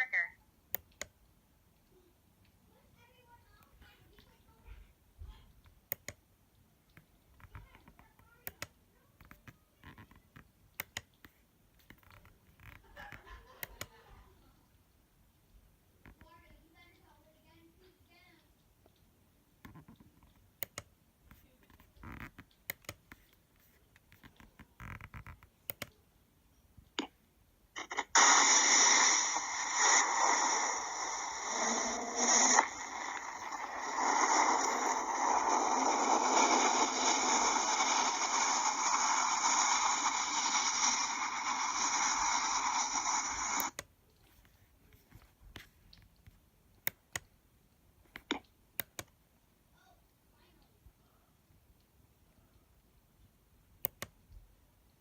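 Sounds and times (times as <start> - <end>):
faint clicks: 5.6 - 14.1, 18.4 - 26.0, 51.7 - 55.0
loud static hiss: 27.7 - 43.8.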